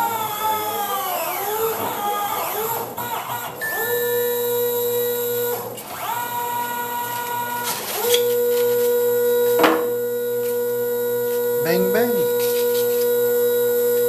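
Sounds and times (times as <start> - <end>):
stepper motors whining: 0.0 - 14.0.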